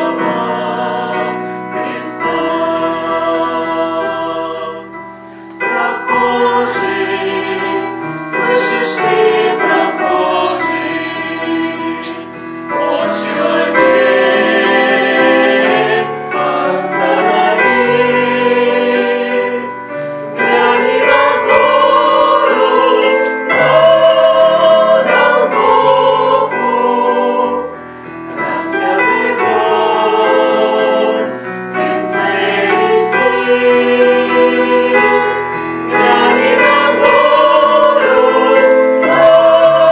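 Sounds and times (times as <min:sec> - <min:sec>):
choir singing a hymn: 0:00.0 - 0:39.9
singers breathing: 0:05.1 - 0:05.7, 0:12.3 - 0:12.8, 0:35.4 - 0:35.9.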